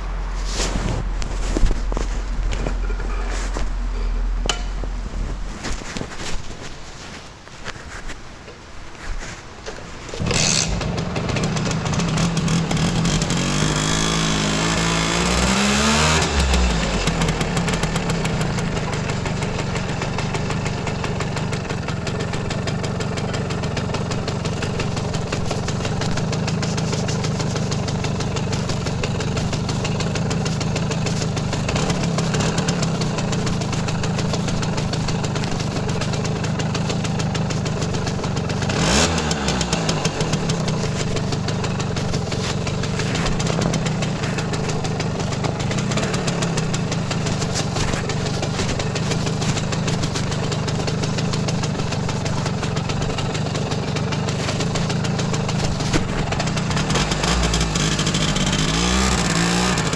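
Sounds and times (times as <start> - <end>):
moped engine running at low revs: 0.0 - 8.1, 8.9 - 59.9.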